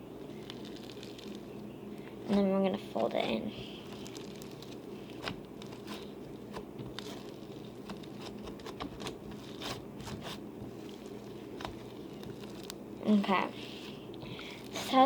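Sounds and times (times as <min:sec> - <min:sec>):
slime clicking and crackling: 0:00.3 - 0:01.6, 0:03.8 - 0:12.8.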